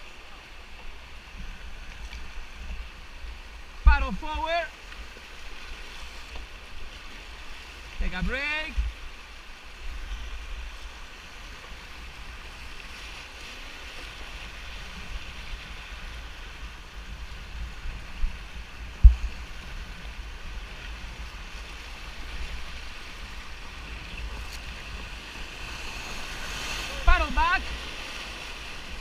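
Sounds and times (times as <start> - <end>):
river water rushing: 0.0 - 29.0
wind rumbling on microphone: 6.3 - 29.0.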